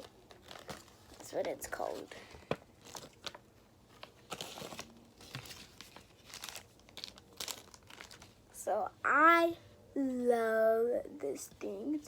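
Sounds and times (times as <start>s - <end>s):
packaging crinkling: 0.0s - 8.6s.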